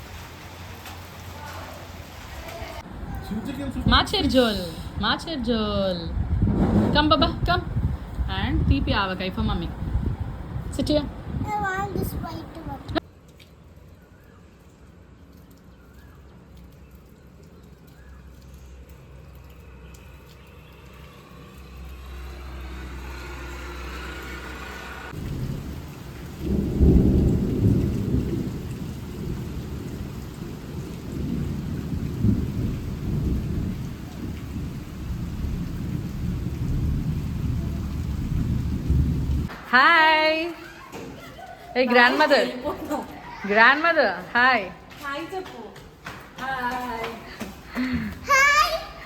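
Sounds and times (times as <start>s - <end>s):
rain falling: 0.0s - 5.6s, 11.4s - 49.0s
low rumbling: 3.8s - 13.0s, 25.1s - 39.5s.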